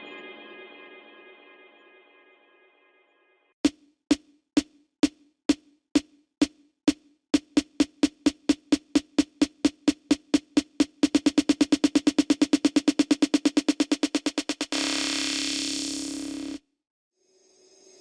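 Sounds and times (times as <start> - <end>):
electronic drum hits accelerating: 3.6 - 16.6.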